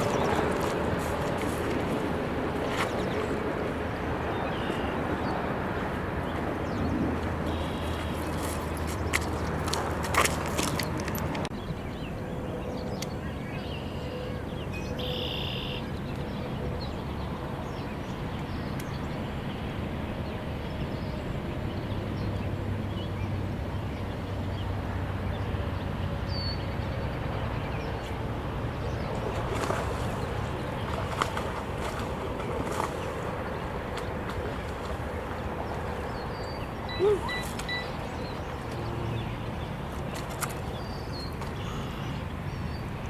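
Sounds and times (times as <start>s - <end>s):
bird calls: 12.0s - 16.6s, 28.8s - 42.9s.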